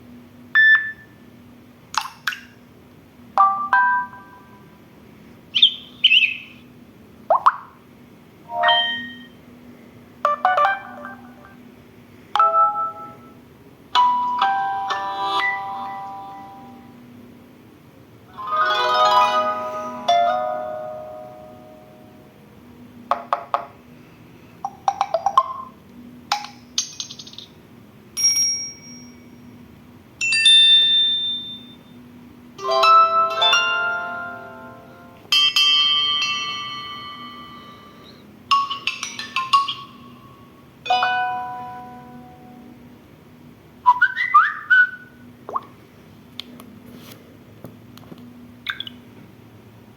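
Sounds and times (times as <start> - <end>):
phone ringtone chimes and jingles: 8.5 - 9.3, 10.3 - 11.6, 35.4 - 40.3.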